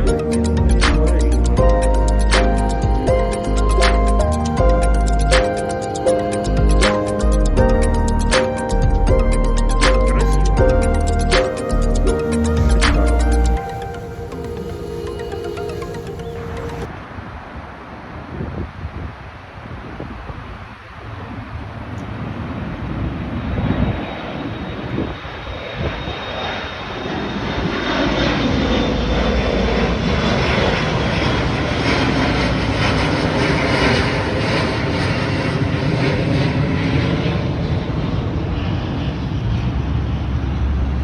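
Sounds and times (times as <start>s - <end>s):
high whine falling in pitch: 0.0s - 17.6s
airplane engine flying past: 0.0s - 18.4s, 20.4s - 41.0s.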